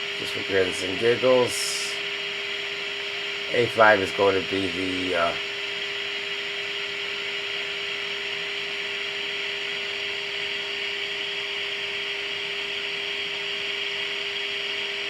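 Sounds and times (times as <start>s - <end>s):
radio static hiss: 0.0s - 2.1s, 3.5s - 5.4s.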